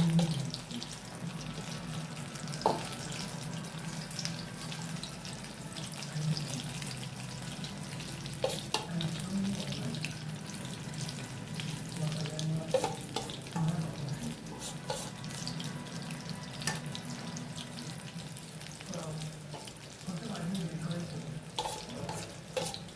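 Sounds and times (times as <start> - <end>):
food sizzling in hot oil: 0.0 - 22.9.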